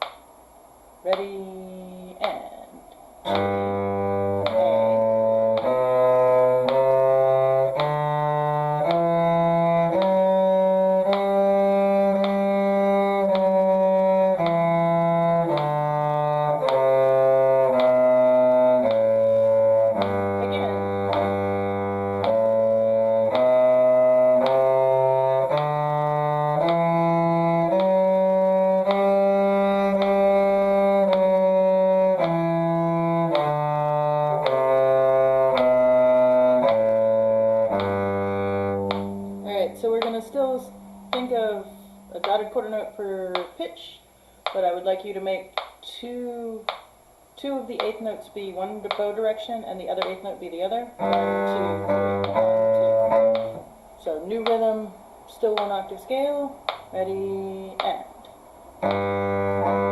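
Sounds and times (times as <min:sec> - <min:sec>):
bowed strings playing a scale: 0:03.2 - 0:43.5, 0:47.7 - 0:55.9, 0:56.7 - 0:59.9
click on note change: 0:03.3 - 0:42.4, 0:51.0 - 0:53.7
lower harmony line: 0:03.3 - 0:42.8, 0:49.8 - 0:54.8.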